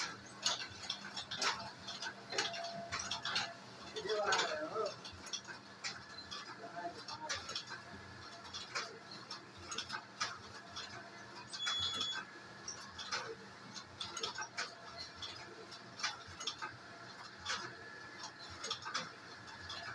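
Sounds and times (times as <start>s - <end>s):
knitting machine clicking: 0.0s - 19.9s.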